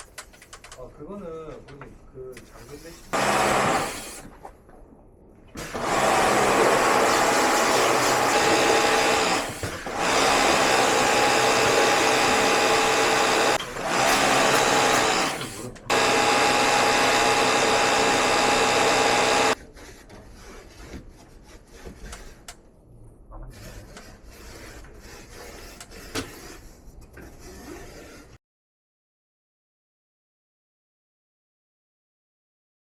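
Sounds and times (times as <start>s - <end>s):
small electric motor running: 5.8s - 19.6s.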